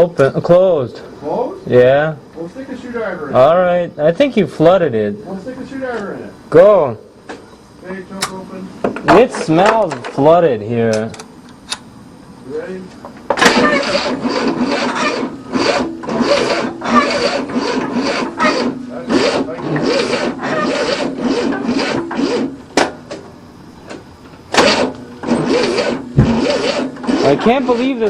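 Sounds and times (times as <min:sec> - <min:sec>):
car starter cranking engine: 0:13.4 - 0:22.6, 0:24.5 - 0:27.6.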